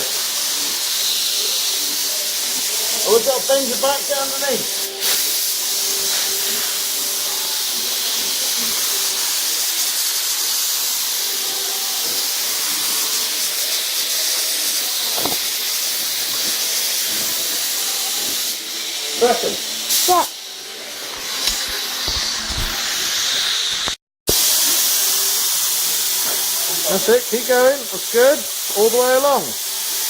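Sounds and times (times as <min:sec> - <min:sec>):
paint spray gun hissing: 0:00.0 - 0:20.4, 0:21.0 - 0:30.0.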